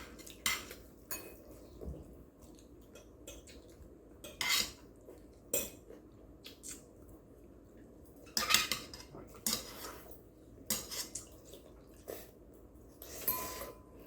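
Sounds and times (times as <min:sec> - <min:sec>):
utensils clinking against dishes: 0:13.0 - 0:14.0.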